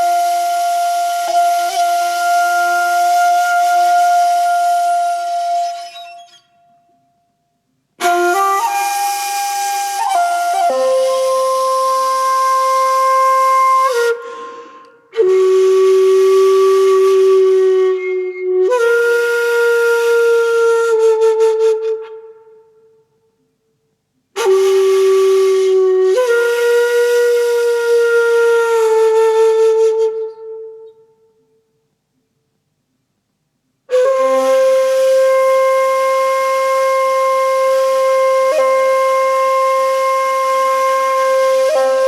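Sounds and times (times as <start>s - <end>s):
flute-like instrument melody: 0.0s - 7.4s, 8.0s - 23.3s, 24.4s - 31.5s, 33.9s - 42.0s.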